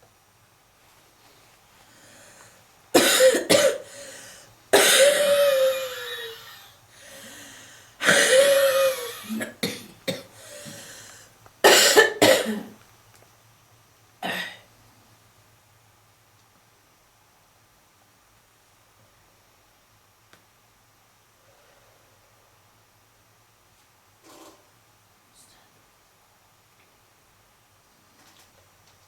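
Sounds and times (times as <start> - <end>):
person breathing: 1.8 - 2.6, 3.8 - 4.6, 5.7 - 8.1, 10.3 - 11.4
person coughing harshly: 3.0 - 6.6, 8.0 - 10.9, 11.6 - 12.8, 14.2 - 14.7.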